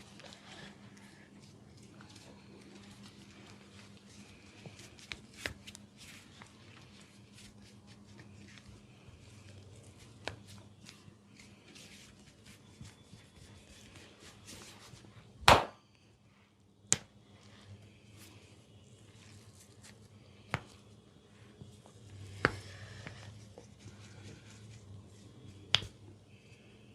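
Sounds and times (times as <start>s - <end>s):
hands rubbing oiled skin: 0.1s - 15.2s, 17.4s - 26.0s
loud sharp smack: 15.5s - 15.8s
patting on skin: 18.1s - 26.0s.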